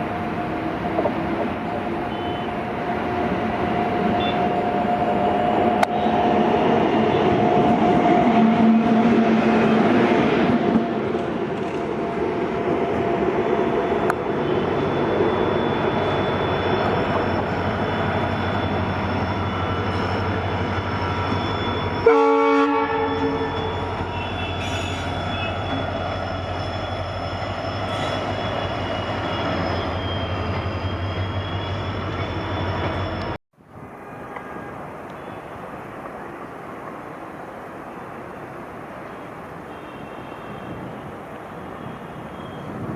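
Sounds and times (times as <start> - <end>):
train rumbling past: 0.0 - 42.9
train horn blast: 8.4 - 9.8, 22.0 - 25.8, 33.9 - 35.6, 39.7 - 40.9.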